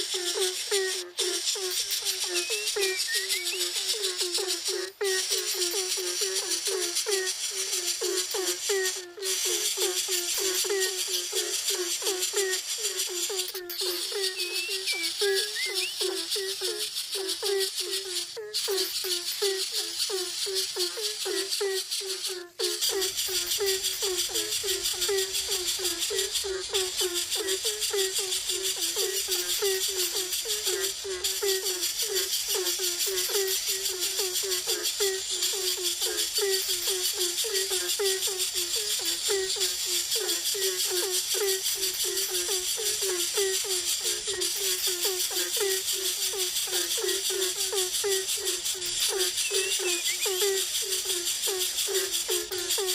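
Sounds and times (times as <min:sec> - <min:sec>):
bird calling: 0:00.0 - 0:06.6, 0:12.4 - 0:31.0, 0:48.4 - 0:51.0
high-pitched buzzing chorus: 0:00.0 - 0:51.3
steady high hiss: 0:00.0 - 0:52.9.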